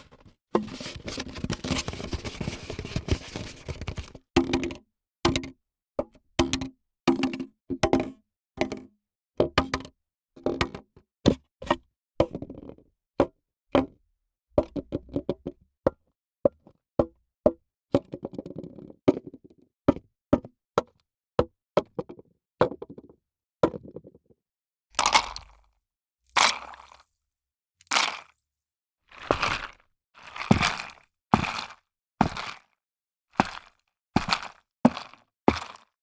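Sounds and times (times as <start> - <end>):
drink containers knocking and clinking: 25.0 - 25.6.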